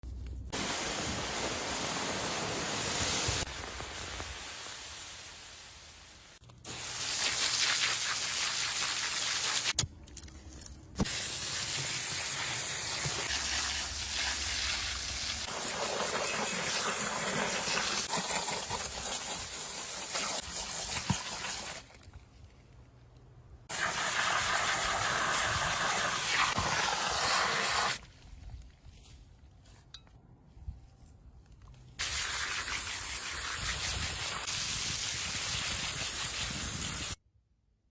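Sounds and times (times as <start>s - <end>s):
rushing splashing water: 0.6s - 5.8s.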